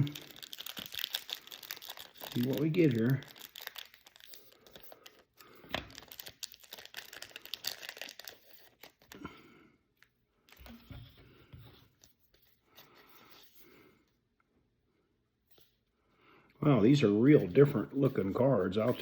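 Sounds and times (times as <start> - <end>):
wrapper crinkling and tearing: 0.0 - 9.2.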